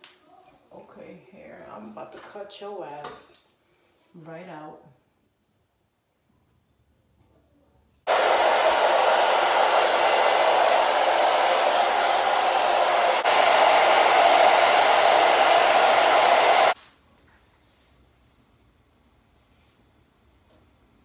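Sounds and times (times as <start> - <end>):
hair dryer blowing: 8.1 - 16.8.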